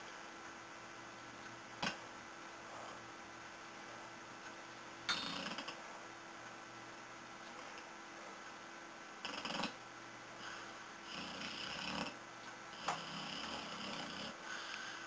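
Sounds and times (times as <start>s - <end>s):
steady low hum: 0.0s - 15.0s
dog snoring and snorting: 5.1s - 5.9s, 9.2s - 9.8s, 10.5s - 14.6s.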